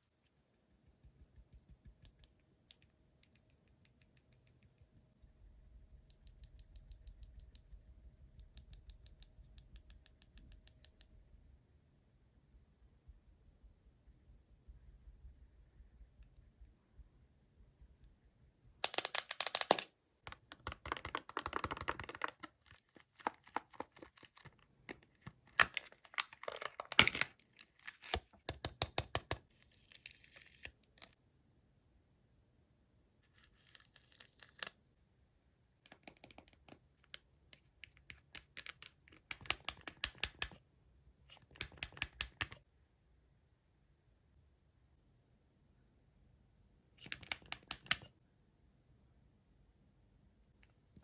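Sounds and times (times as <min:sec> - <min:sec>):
scratching tapping and crinkling: 0:20.3 - 0:27.4.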